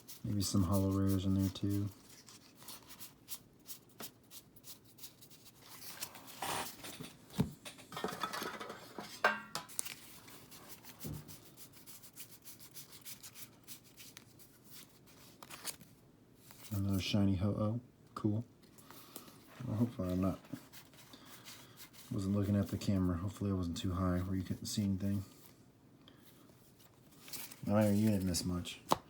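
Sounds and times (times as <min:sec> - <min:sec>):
cards being flipped by hand: 0:00.0 - 0:06.8, 0:09.6 - 0:16.8, 0:26.8 - 0:29.0.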